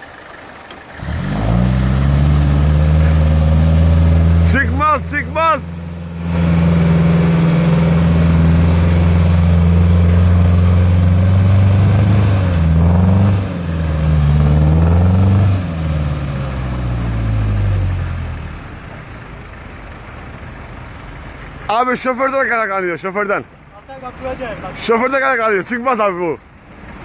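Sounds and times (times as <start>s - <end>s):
truck engine straining at high revs: 0.0s - 19.7s.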